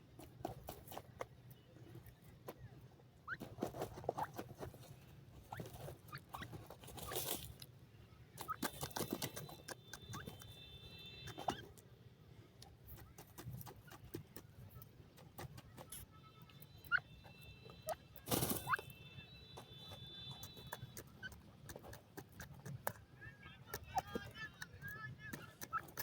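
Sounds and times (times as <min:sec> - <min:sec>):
birds pecking clicks and taps: 0:08.4 - 0:10.6, 0:12.6 - 0:17.0, 0:19.6 - 0:26.0.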